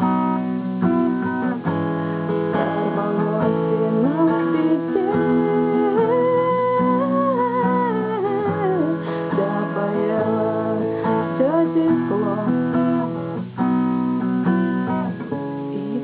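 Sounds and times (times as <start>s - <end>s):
acoustic guitar strumming chords: 0.0s - 16.0s.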